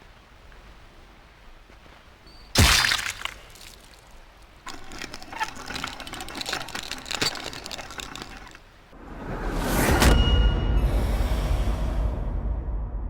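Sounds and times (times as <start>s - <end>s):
loud crash with shattering: 2.6s - 3.4s
crackling and clattering: 3.6s - 8.9s.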